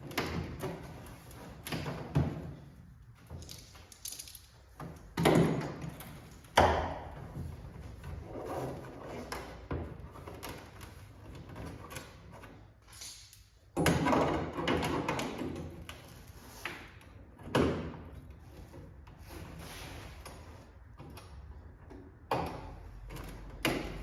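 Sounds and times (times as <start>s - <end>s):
metal bodywork knocks and clatter: 0.0s - 12.1s.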